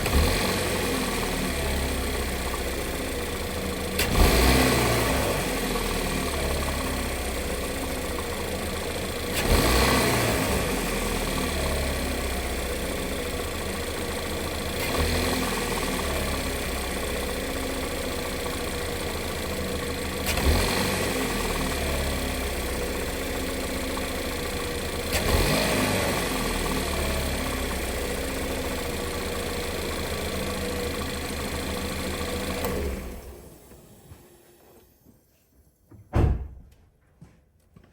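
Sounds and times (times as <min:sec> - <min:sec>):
knocking engine idling and revving: 0:00.0 - 0:34.4.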